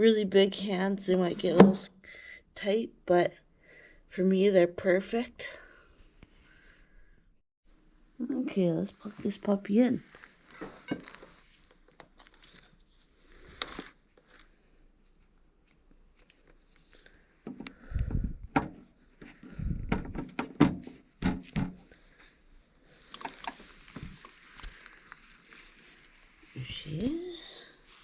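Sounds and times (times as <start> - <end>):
clicks and knocks of handling: 23.1 - 24.9.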